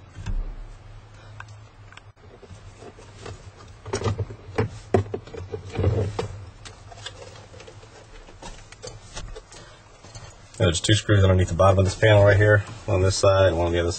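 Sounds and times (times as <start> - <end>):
handling knocks and clicks: 0.0 - 10.6.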